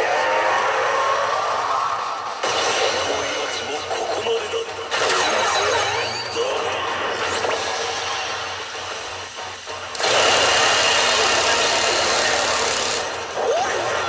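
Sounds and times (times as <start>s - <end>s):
pachinko machine rattling hiss: 10.0s - 13.3s.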